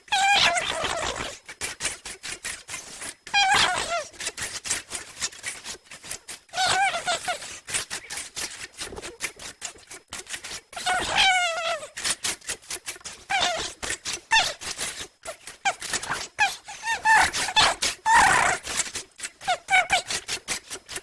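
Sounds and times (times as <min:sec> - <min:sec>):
person making squeaky noises: 0:00.0 - 0:21.0.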